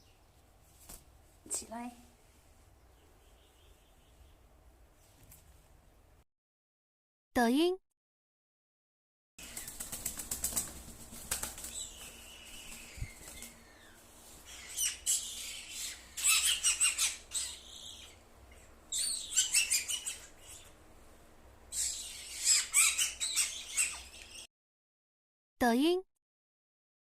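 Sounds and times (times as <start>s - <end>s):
bird wings fluttering: 0.7s - 1.2s, 9.4s - 14.6s
small bird chirping: 2.8s - 4.5s, 11.5s - 20.8s, 21.7s - 24.5s.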